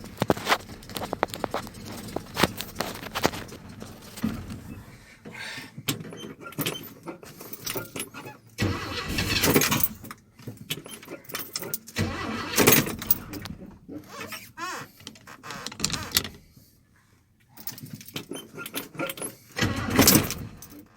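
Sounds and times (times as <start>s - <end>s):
truck engine turning over: 0.0s - 5.2s, 8.6s - 10.2s, 12.0s - 14.5s, 19.6s - 20.7s.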